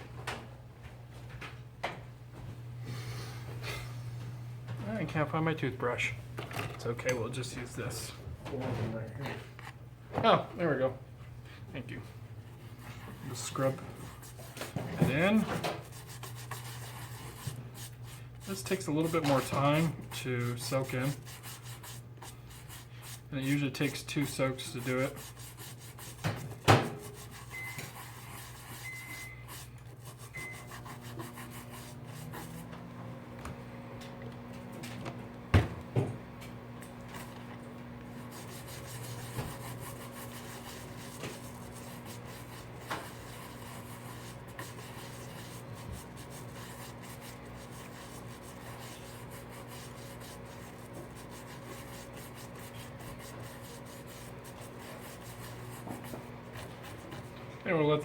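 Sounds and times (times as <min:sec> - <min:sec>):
brush scrubbing: 0:12.5 - 0:33.0, 0:37.0 - 0:58.0.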